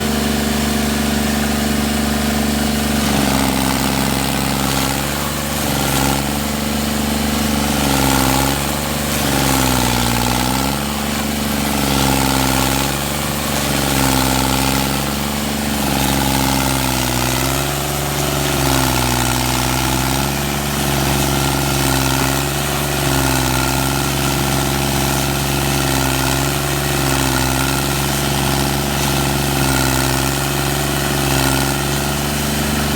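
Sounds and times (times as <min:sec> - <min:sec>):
stump grinder engine running hard: 0:00.0 - 0:32.9.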